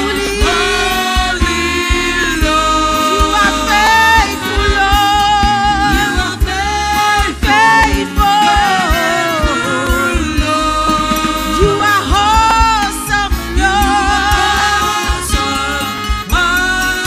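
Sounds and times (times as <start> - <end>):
gospel singing with held notes: 0.0 - 17.0
instrumental accompaniment: 0.0 - 17.0.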